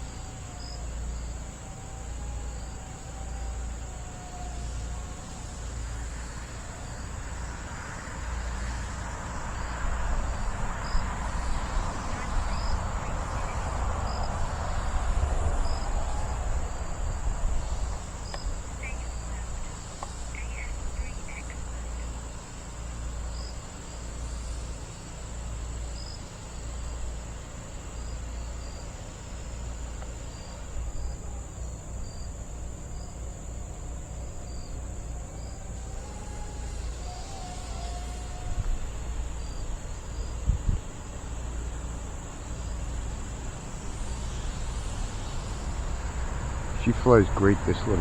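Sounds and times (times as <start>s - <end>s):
high-pitched insect chorus: 0.0s - 48.0s
wind buffeting microphone: 9.4s - 21.9s, 36.8s - 41.8s
faint chirps: 10.8s - 46.2s.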